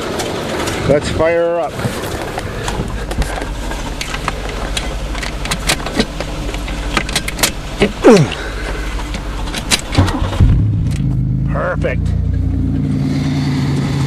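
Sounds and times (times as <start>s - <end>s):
car engine droning: 0.0s - 14.0s
clicks and rattles: 2.2s - 11.1s.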